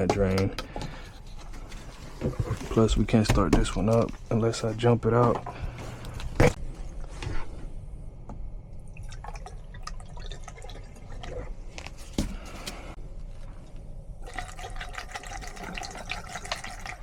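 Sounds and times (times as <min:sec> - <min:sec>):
liquid trickling and dripping: 0:08.7 - 0:11.6, 0:14.2 - 0:17.0.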